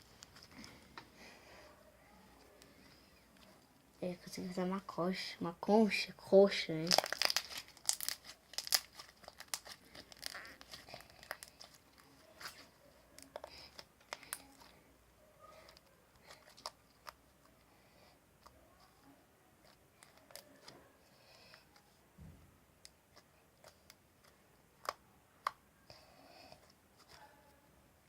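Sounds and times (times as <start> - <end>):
slime crackling and popping: 6.8 - 12.6, 13.2 - 14.7.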